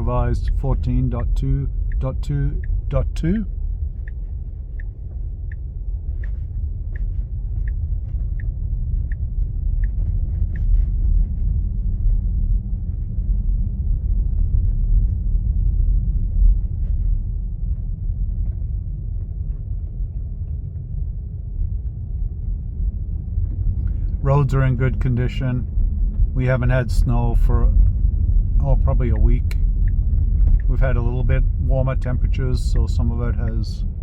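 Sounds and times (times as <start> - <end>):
turn signal ticking: 0.0 - 13.2, 23.2 - 34.0
road and tyre rumble in car: 0.0 - 34.0.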